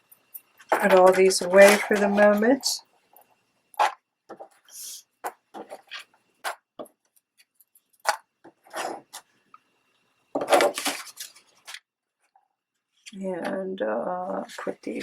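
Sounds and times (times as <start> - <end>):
rustling scrape: 8.6 - 9.3, 10.5 - 11.8.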